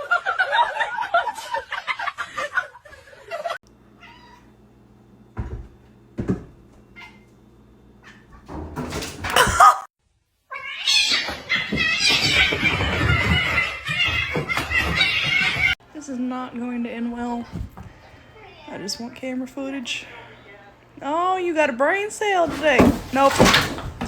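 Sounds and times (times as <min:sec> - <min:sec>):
cat meowing loudly: 0:10.5 - 0:12.2
soft thumps: 0:17.4 - 0:18.2.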